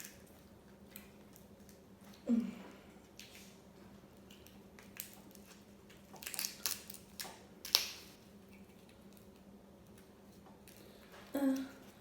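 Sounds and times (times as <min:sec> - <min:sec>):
faint steady hum: 0:00.0 - 0:12.0
crab shells cracking: 0:04.2 - 0:09.5.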